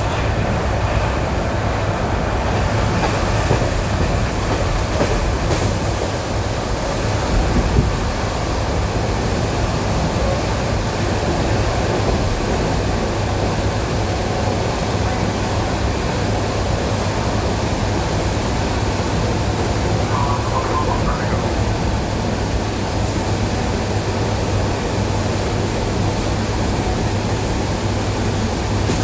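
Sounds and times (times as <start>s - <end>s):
train wheels rumbling: 0.0s - 23.2s
brief higher tone: 20.0s - 21.7s.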